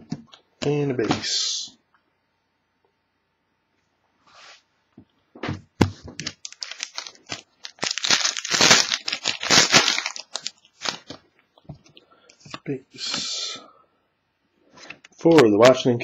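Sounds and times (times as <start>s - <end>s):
foil wrapper tearing and crinkling: 6.2s - 11.2s.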